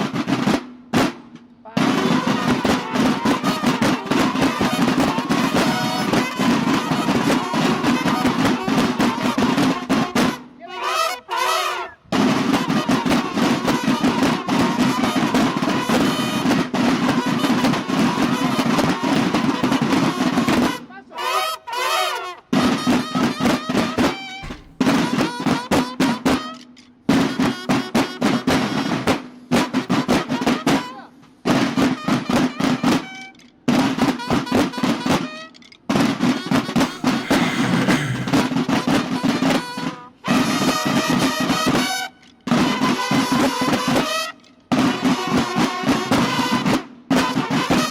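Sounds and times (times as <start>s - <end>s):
snare drums playing fast cadence: 24.4s - 24.9s.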